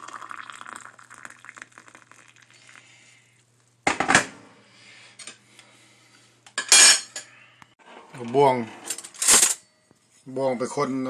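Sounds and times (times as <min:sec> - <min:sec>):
dishes and cutlery clattering: 0:06.6 - 0:07.3.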